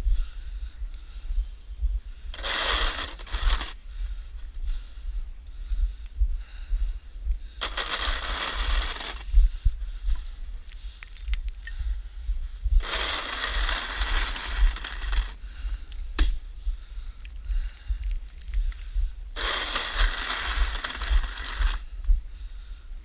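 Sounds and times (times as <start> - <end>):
snow shovel scraping snow: 2.4 - 3.8, 7.6 - 9.2, 12.8 - 15.4, 19.4 - 21.8.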